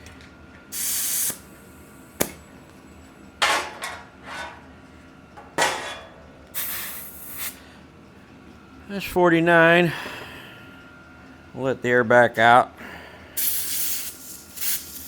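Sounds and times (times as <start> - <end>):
air hissing into bike tire: 0.7 - 1.5, 6.6 - 7.6, 13.4 - 15.0.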